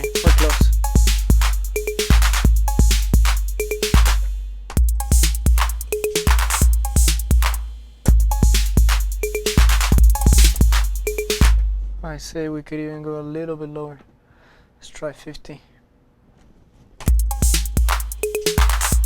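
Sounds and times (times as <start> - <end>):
snare or clap hits: 0.0 - 4.3, 5.2 - 6.7, 8.6 - 11.6, 17.5 - 19.0
hi-hat ticks: 0.0 - 11.6, 17.1 - 19.0
pitched tom or conga notes: 0.0 - 11.7, 17.1 - 19.0
drum machine bass drum kicks: 0.0 - 12.0, 17.1 - 19.0.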